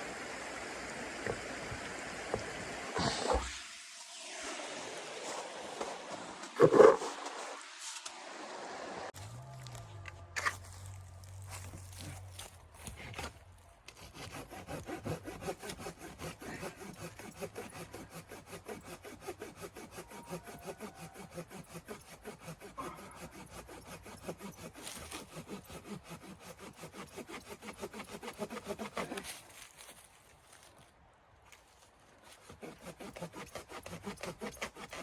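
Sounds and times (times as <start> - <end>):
hand saw cutting wood: 6.6 - 7.4, 10.4 - 29.9, 32.2 - 35.0.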